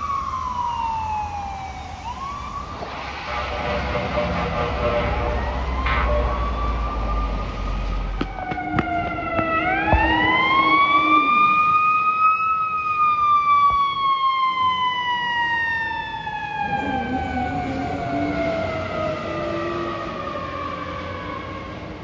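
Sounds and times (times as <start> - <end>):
fire truck siren: 0.0 - 22.0
steady low horn tone: 1.8 - 11.8, 15.8 - 20.2.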